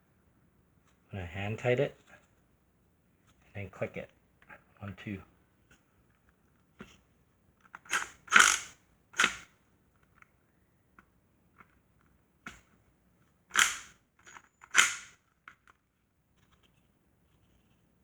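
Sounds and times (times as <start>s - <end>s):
torque wrench clicks: 7.9s - 9.4s, 13.5s - 15.1s.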